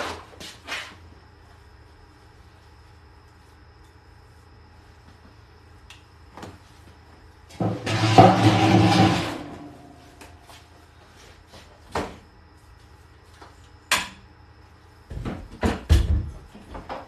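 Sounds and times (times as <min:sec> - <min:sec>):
objects knocking and clunking: 0:07.5 - 0:09.8, 0:15.1 - 0:17.0.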